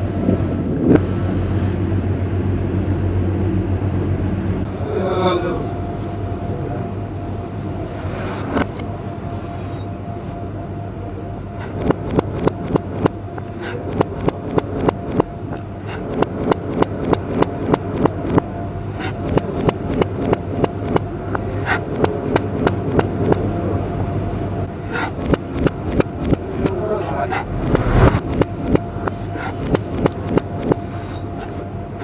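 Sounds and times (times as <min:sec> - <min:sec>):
steady low hum: 0:00.0 - 0:32.0
knife chopping on cutting board: 0:11.6 - 0:15.3, 0:15.9 - 0:18.4, 0:19.0 - 0:23.5, 0:24.9 - 0:31.6.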